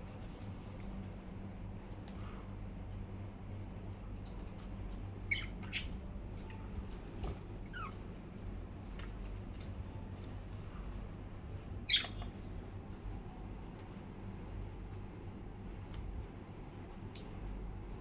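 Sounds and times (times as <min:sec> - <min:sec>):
low steady hum: 0:00.0 - 0:18.0
budgies chirping: 0:05.2 - 0:06.6, 0:07.6 - 0:08.0, 0:11.9 - 0:12.3.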